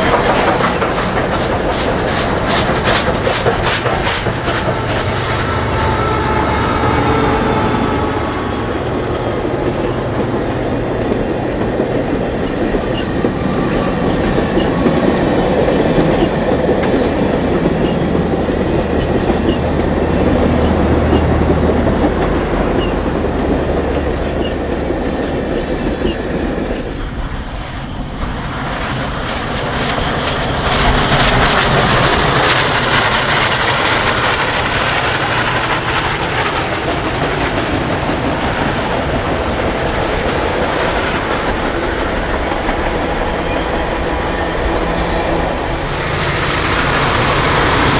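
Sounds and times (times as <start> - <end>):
steel wheels clicking over rail joints: 0.0 - 6.1
train rumbling past: 0.0 - 47.9.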